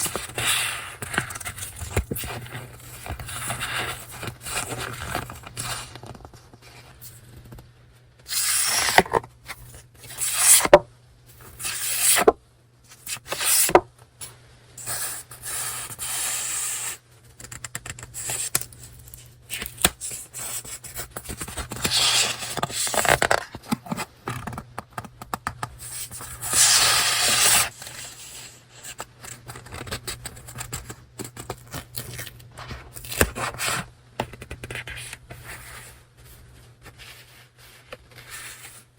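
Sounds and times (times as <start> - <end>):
paper and packaging rustling: 1.0 - 7.6.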